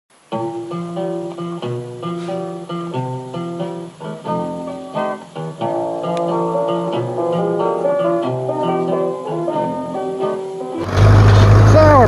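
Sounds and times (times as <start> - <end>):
plucked acoustic guitar: 10.8 - 12.0.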